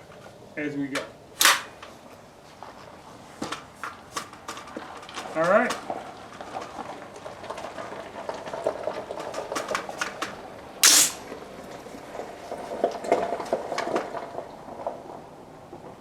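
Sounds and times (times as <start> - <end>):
rifle clicks and rattles: 1.4 - 1.9
sharp loud crack: 10.8 - 11.3.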